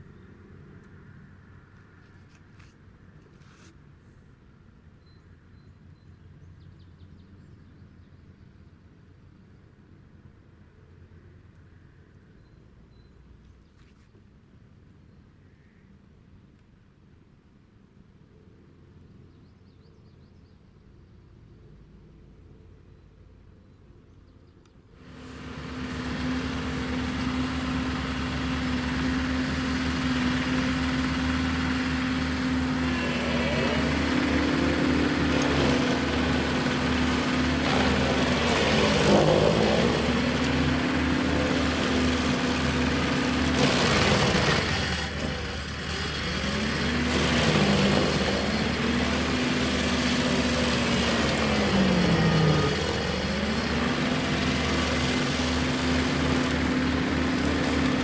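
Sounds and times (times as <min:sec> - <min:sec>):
stump grinder engine running: 0:25.0 - 0:58.0.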